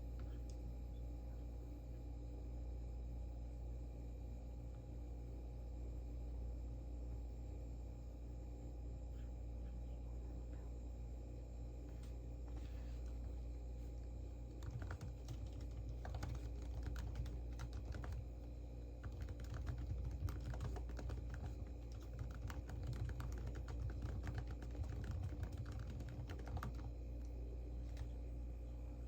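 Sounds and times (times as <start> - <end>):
steady low hum: 0.0 - 29.0
keyboard typing clicks: 14.5 - 18.2, 19.0 - 28.1.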